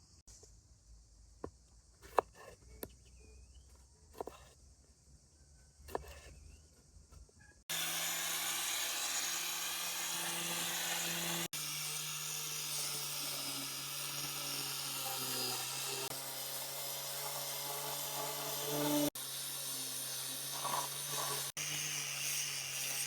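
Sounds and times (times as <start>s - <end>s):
power tool motor whining: 7.7s - 23.0s.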